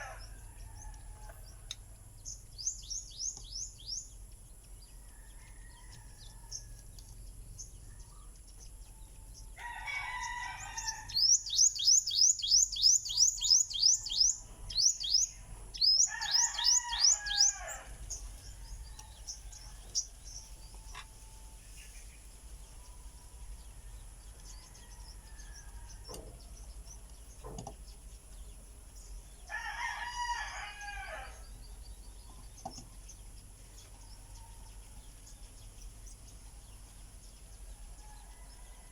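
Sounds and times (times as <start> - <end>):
rooster crowing: 0.0 - 1.4, 9.6 - 11.2, 16.0 - 18.0, 29.5 - 31.4, 38.0 - 38.9
small bird chirping: 0.0 - 29.6.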